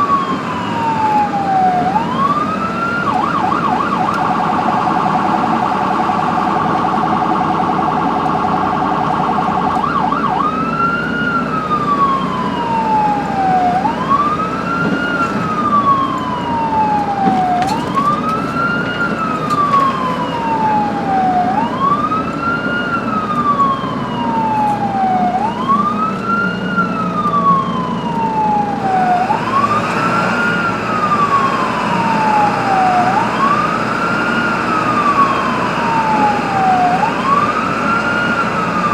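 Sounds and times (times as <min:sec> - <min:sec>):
ambulance siren: 0:00.0 - 0:38.9
vehicle rumble: 0:00.0 - 0:38.9.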